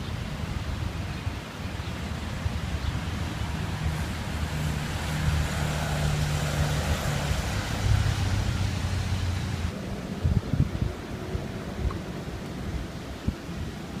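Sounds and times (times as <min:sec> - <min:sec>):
wind rumbling on microphone: 0:00.0 - 0:14.0
vehicle passing by: 0:02.7 - 0:09.7.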